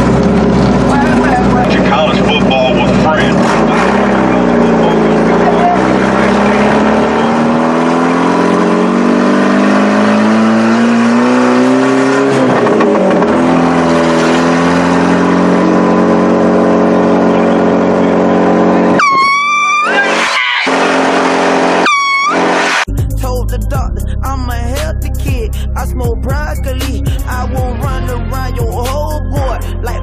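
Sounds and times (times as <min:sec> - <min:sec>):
car engine speeding up: 0:00.0 - 0:22.9
air horn blast: 0:18.9 - 0:22.9.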